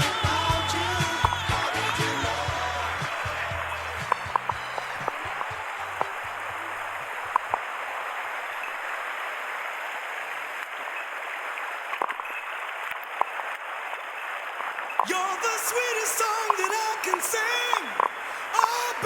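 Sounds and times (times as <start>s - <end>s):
background music: 0.0s - 7.0s
stream water flowing: 1.0s - 19.0s
sharp clicks: 7.3s - 7.6s.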